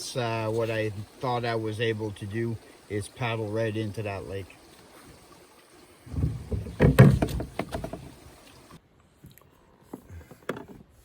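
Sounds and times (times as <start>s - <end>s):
paddle knocking canoe hull: 6.1s - 8.2s.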